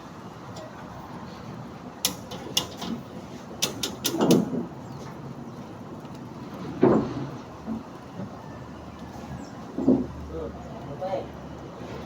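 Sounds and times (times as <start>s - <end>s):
sharp knocks or clicks: 2.0s - 3.0s, 3.6s - 4.5s.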